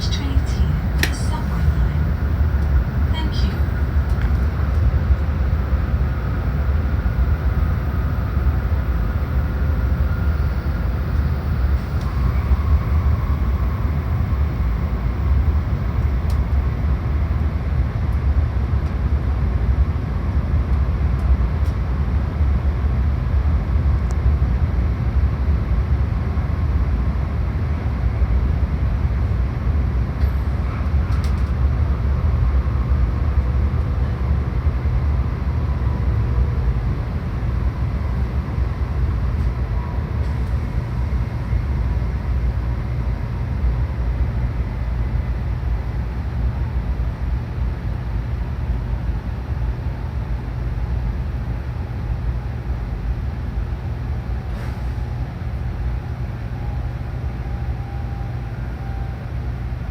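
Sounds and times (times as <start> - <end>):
faint whining tones: 0.0 - 17.8
train low rumble: 0.0 - 59.9.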